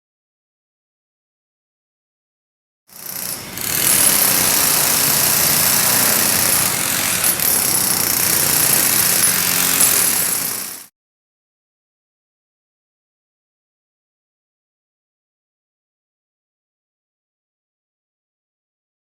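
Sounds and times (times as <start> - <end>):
concrete milling machine grinding: 3.0 - 10.9.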